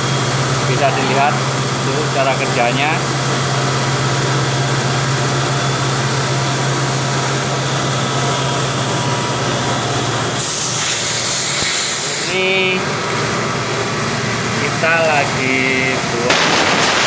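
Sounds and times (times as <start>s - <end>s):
machine hum with high whine: 0.0s - 17.0s
loud hiss: 10.4s - 12.6s, 16.3s - 17.0s.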